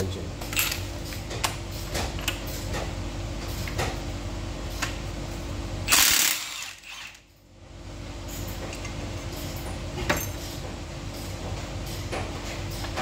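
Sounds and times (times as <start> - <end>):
steady low hum: 0.0 - 13.0
metallic clicks and clanks of parts: 0.4 - 2.9.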